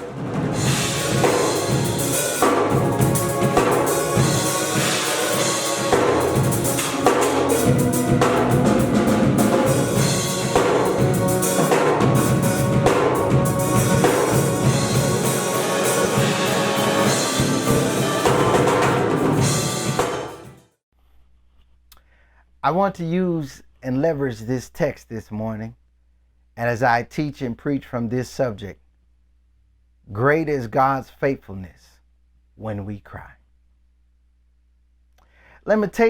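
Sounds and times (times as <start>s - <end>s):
instrumental music with drums: 0.0s - 20.7s.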